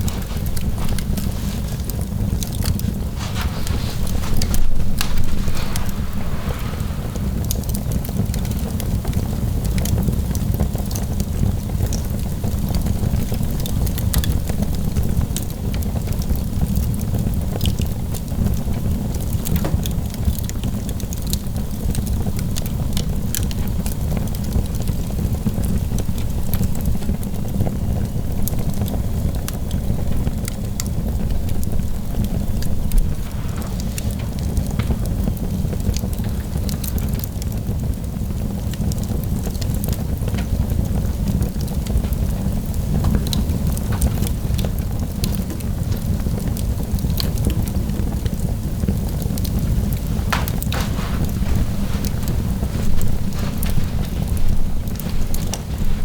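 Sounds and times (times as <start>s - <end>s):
low rumble: 0.0s - 8.8s
fire crackling: 0.0s - 56.0s.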